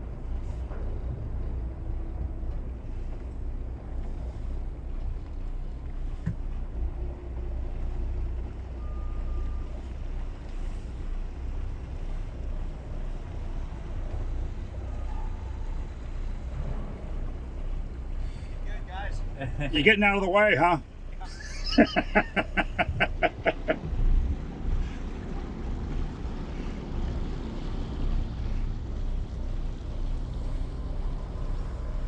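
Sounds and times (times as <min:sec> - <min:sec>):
boat diesel engines rumbling: 0:00.0 - 0:32.0
wind on microphone: 0:22.7 - 0:28.9.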